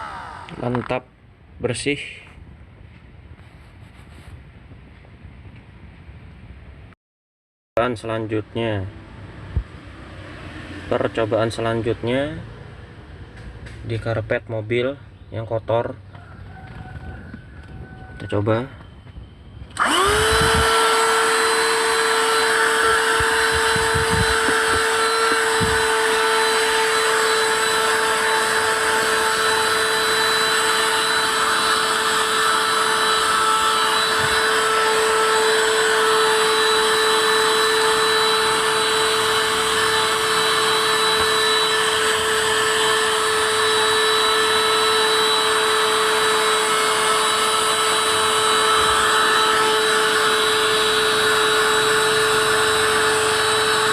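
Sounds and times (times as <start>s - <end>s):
handheld vacuum cleaner whining: 0.0s - 1.0s, 19.7s - 53.9s.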